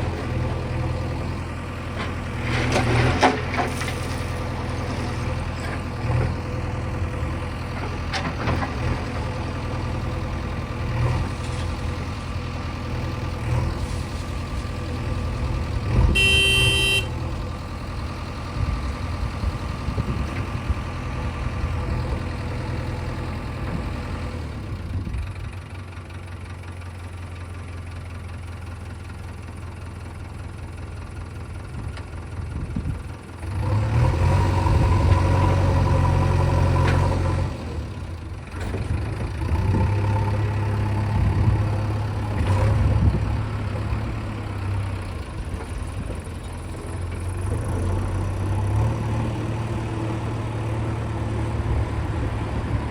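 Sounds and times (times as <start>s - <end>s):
diesel engine running: 0.0s - 52.9s
vehicle horn: 16.0s - 17.3s.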